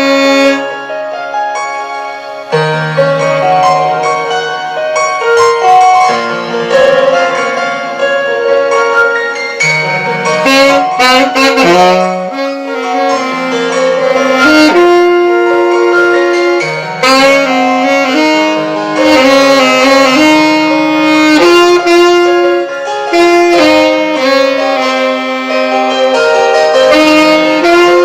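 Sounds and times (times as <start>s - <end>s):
alto saxophone slow melody: 0.0s - 1.2s, 2.0s - 28.0s
low accompanying notes: 3.0s - 16.1s.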